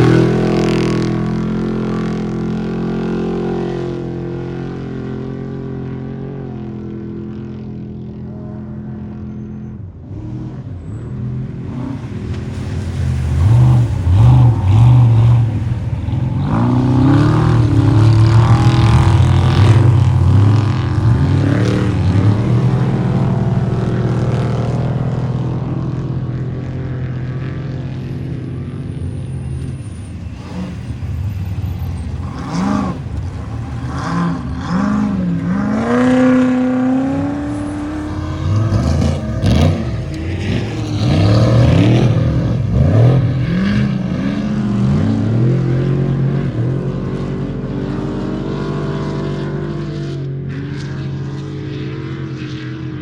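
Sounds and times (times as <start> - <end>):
race vehicle engine driving away: 0.0 - 53.0
race vehicle engine revving past: 10.3 - 28.2, 29.6 - 53.0.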